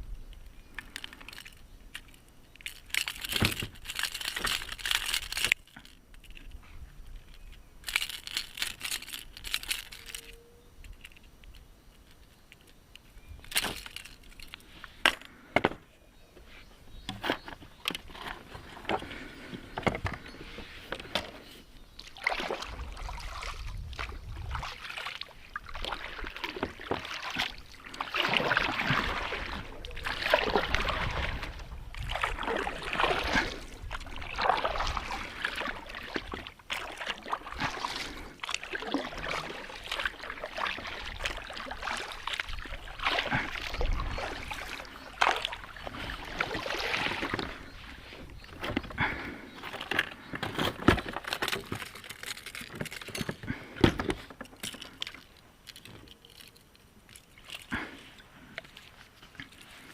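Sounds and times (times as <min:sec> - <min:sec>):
water sloshing: 0:17.2 - 0:59.9.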